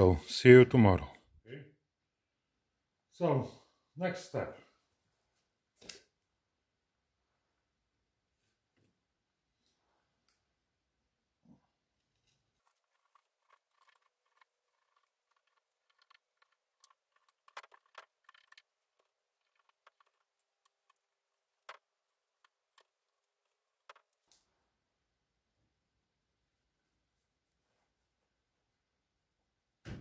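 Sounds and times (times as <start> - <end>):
faint irregular clicks and taps: 11.5 - 24.6.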